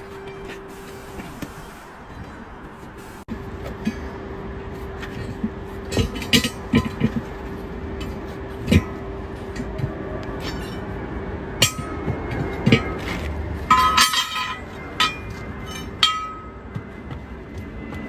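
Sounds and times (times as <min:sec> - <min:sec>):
machine hum: 0:00.0 - 0:18.0
metal tools clinking: 0:13.7 - 0:16.6.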